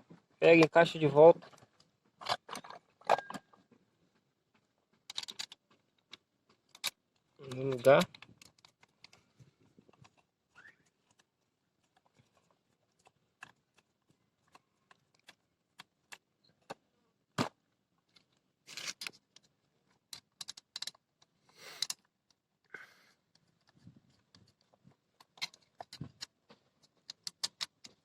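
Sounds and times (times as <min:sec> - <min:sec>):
metal tools clicking and clinking: 0:02.2 - 0:03.5
metal parts rattling scrapes: 0:18.7 - 0:19.2.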